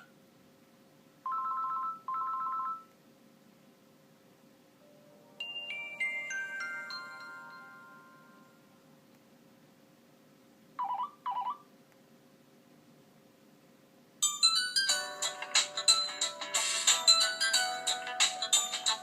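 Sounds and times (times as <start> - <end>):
bell-like ringtone notes: 4.8 - 8.8, 14.2 - 19.0
ringtone melody: 4.8 - 8.8, 14.2 - 19.0
phone chirps: 10.8 - 11.6.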